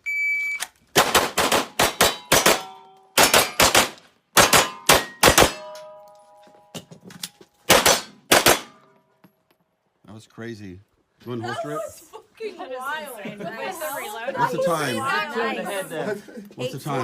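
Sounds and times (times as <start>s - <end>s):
handgun shots: 1.0s - 5.9s, 7.7s - 8.8s
steel targets ringing: 2.0s - 3.6s, 4.5s - 6.9s.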